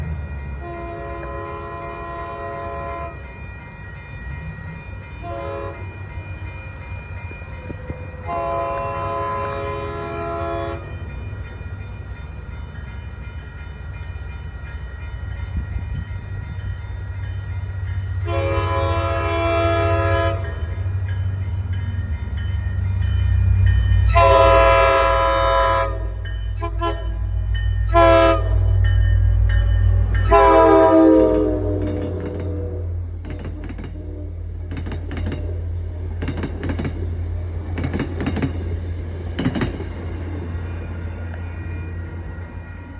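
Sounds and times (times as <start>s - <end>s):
locomotive horn blasts: 0.6s - 3.4s, 5.2s - 5.9s, 7.7s - 11.0s, 18.2s - 20.7s, 24.1s - 27.2s, 27.9s - 28.8s, 29.8s - 34.5s.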